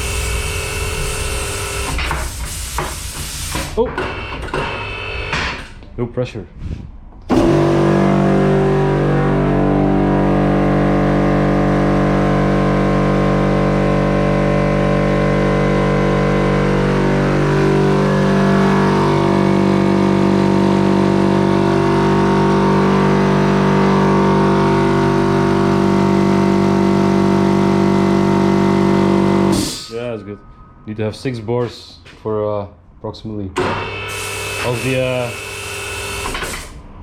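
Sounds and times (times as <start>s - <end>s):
hydraulic pump motor humming: 4.0s - 5.8s, 7.2s - 29.9s, 33.6s - 36.8s.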